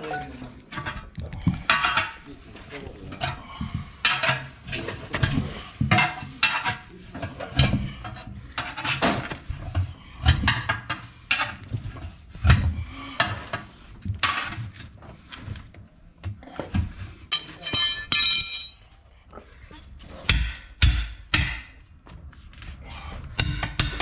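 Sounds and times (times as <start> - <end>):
steel tools clanking on wheel rim: 17.3 - 18.9.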